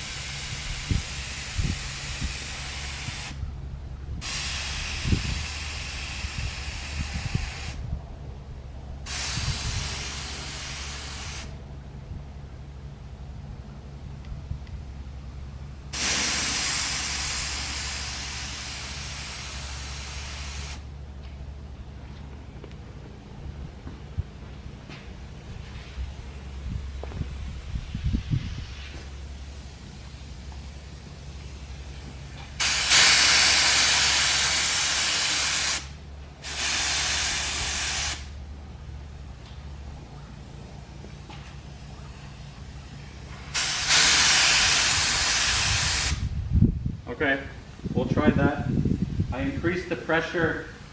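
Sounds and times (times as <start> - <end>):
paint spray gun hissing: 0.0 - 3.4, 4.2 - 7.8, 9.1 - 11.6, 15.9 - 20.9, 28.4 - 38.4, 41.5 - 46.3
steady low hum: 0.0 - 43.8.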